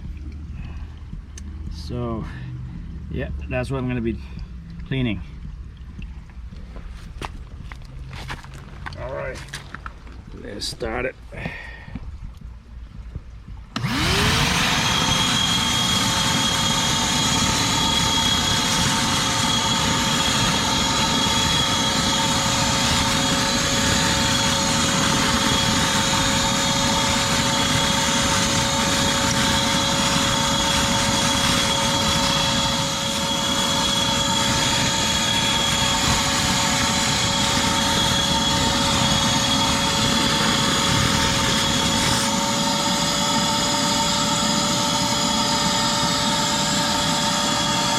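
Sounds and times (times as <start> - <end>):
vacuum motor whining: 13.7 - 47.9.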